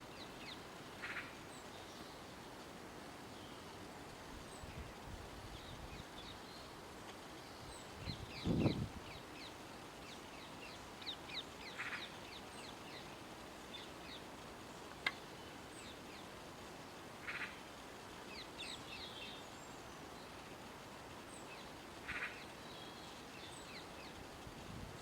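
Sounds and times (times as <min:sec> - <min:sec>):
background hiss: 0:00.0 - 0:25.0
birds chirping: 0:07.4 - 0:16.3.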